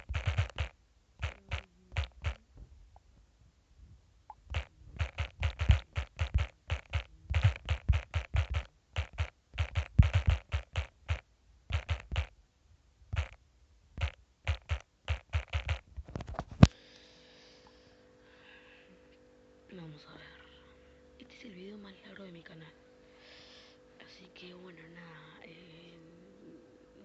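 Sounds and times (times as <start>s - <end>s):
fingers tapping on touchscreen: 0.0s - 2.4s, 4.3s - 12.3s, 13.1s - 13.4s, 14.0s - 16.7s.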